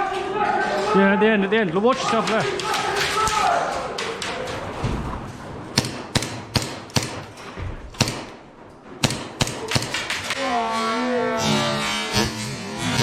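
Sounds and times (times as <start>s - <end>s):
airsoft pistol shots: 5.8s - 7.3s, 8.0s - 8.4s, 9.0s - 10.1s.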